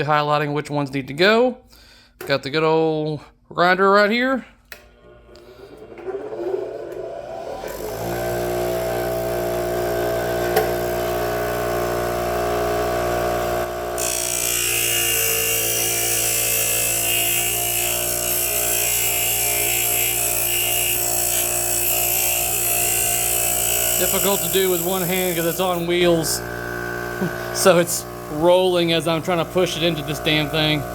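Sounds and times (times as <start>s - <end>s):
electric grinder whining: 5.0s - 30.9s.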